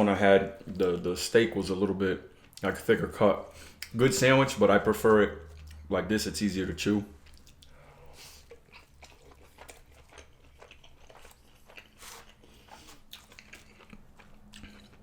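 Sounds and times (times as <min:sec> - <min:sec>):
chewing with wet mouth clicks: 0:03.7 - 0:04.0, 0:05.4 - 0:05.9, 0:07.2 - 0:07.8, 0:08.4 - 0:15.0.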